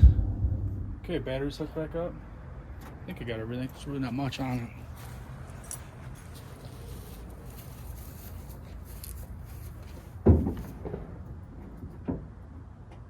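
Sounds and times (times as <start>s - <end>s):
sharp thump: 0.0s - 1.2s
low steady rumble: 0.0s - 2.4s.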